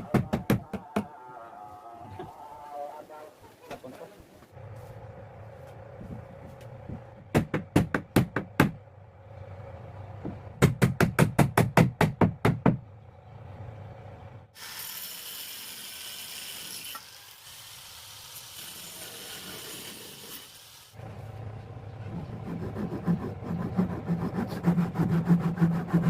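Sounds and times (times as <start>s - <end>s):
hammer striking wood: 0.0s - 1.1s, 7.2s - 8.8s, 10.2s - 12.8s.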